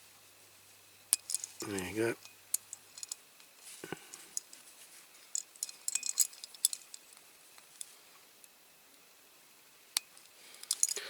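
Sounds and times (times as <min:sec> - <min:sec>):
metallic clicks of toy car: 0:10.0 - 0:11.0.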